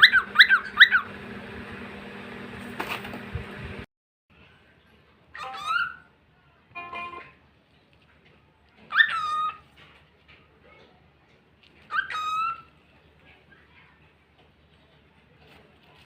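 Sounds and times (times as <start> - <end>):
cockatiel whistled calls: 5.4 - 6.0, 11.9 - 12.7.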